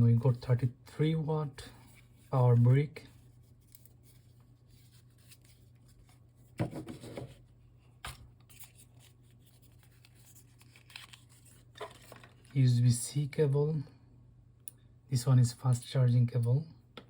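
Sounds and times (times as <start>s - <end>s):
low steady hum: 0.0s - 17.0s
packaging rustle: 8.4s - 12.6s.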